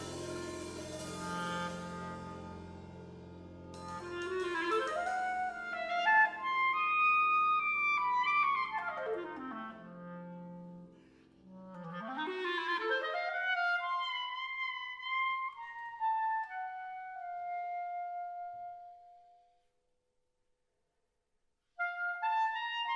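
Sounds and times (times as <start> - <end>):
solo clarinet: 0.0 - 3.0, 3.8 - 19.5, 21.8 - 22.9
band playing low chords: 0.0 - 6.0.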